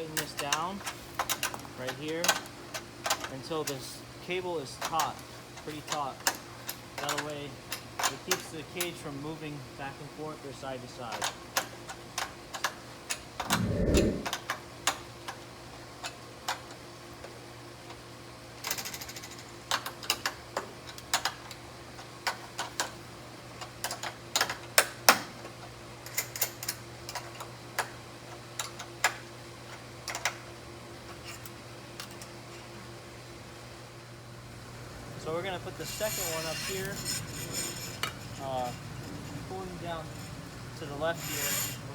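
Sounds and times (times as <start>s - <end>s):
steady low hum: 13.4s - 14.4s.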